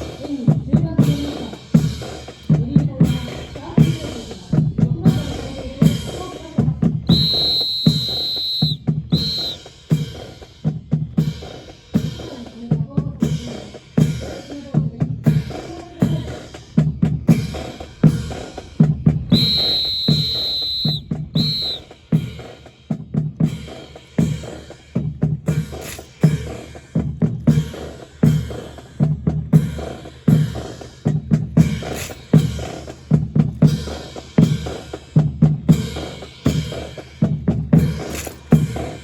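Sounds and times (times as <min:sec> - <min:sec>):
snare and bass drums: 0:00.0 - 0:39.0
high whistle blasts: 0:07.1 - 0:09.8, 0:19.3 - 0:22.1.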